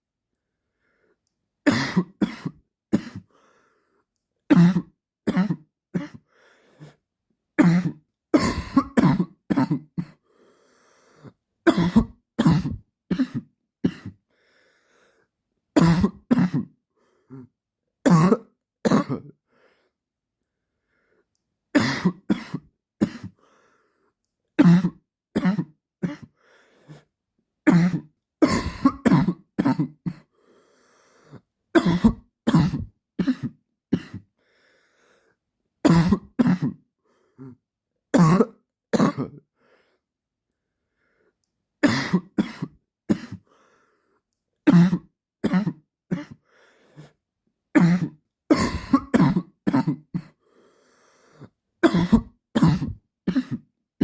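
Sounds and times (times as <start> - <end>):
man coughing: 1.7 - 3.3, 7.6 - 10.2, 11.7 - 14.2, 27.7 - 30.3, 31.8 - 34.3, 41.8 - 43.4, 44.7 - 46.4, 47.8 - 50.4, 51.8 - 53.6.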